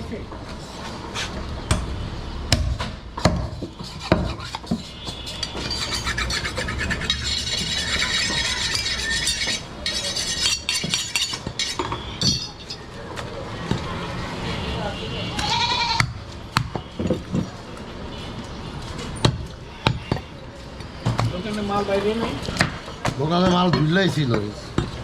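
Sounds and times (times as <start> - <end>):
metal knives scraping and clinking: 3.8 - 12.9.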